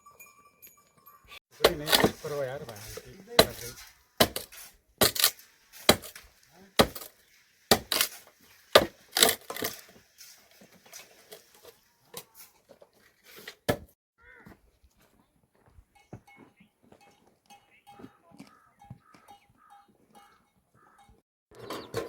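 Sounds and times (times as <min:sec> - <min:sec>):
sharp blows on wood: 0:01.6 - 0:09.7.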